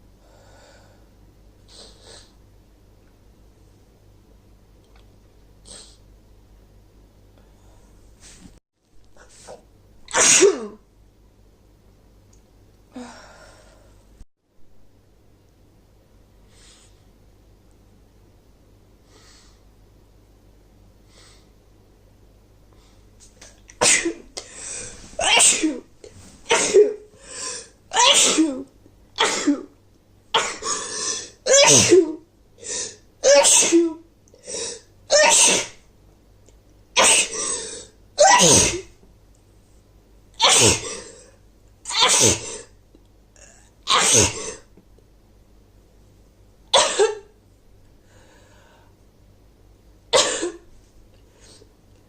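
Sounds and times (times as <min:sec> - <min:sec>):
woman sneezing: 0:10.1 - 0:10.8, 0:23.8 - 0:24.3, 0:25.2 - 0:25.9, 0:26.5 - 0:28.6, 0:30.4 - 0:35.8, 0:37.0 - 0:38.9, 0:40.4 - 0:41.2, 0:41.9 - 0:42.7, 0:43.9 - 0:44.7.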